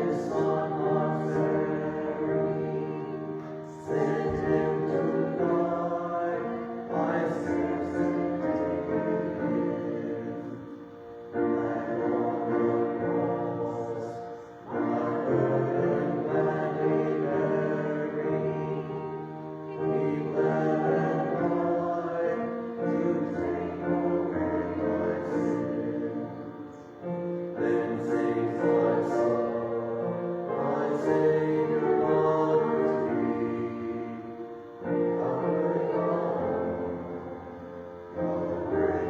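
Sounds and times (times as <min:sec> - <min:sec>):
voices singing a hymn: 0:00.0 - 0:39.0.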